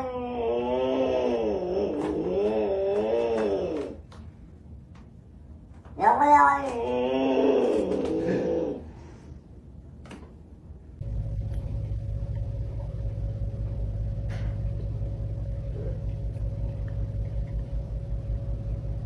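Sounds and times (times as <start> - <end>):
faint steady hum: 0.0 - 19.0
low rumble: 10.9 - 19.0.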